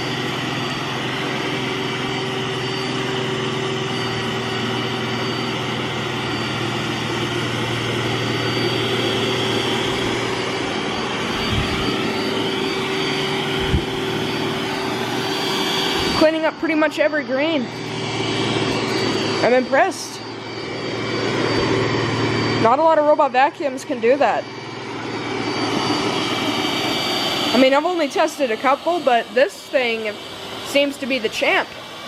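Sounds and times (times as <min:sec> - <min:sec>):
low hum: 0:00.0 - 0:31.9
robot vacuum suction whoosh: 0:08.4 - 0:22.7.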